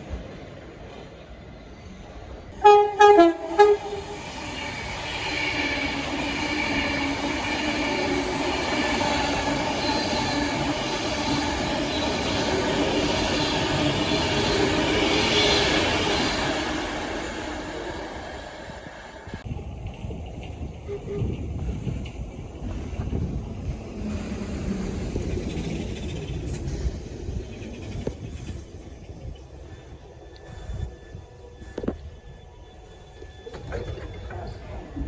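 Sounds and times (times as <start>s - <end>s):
train passing rumble: 0.0s - 35.0s
train horn blasts: 2.5s - 4.3s.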